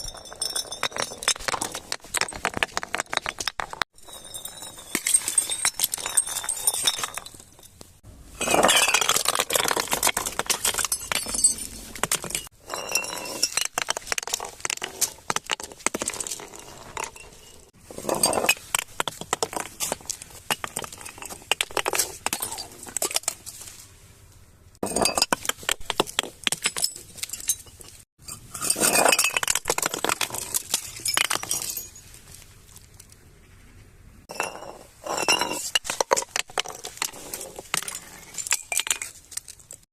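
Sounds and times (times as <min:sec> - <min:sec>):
glass clinking and crunching: 0:00.0 - 0:23.6, 0:24.8 - 0:32.1, 0:34.3 - 0:39.9
glass bottles breaking: 0:04.0 - 0:07.7, 0:08.4 - 0:14.4, 0:24.8 - 0:32.0.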